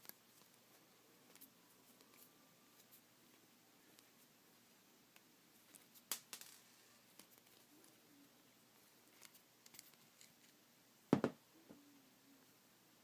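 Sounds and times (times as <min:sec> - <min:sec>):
heavy knock: 0:11.1 - 0:11.4.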